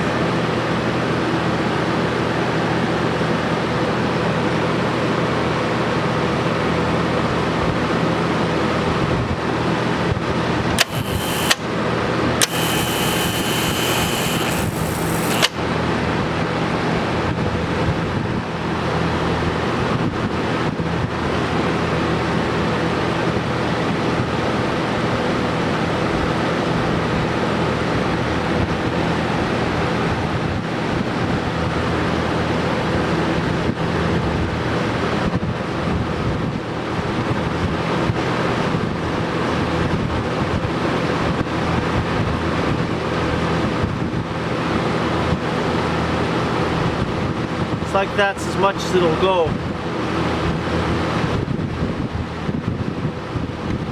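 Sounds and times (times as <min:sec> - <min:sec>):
fan noise: 0:02.9 - 0:53.9
welder electrical hum: 0:10.5 - 0:16.5
harsh hissing buzz: 0:10.8 - 0:11.7, 0:12.4 - 0:15.6.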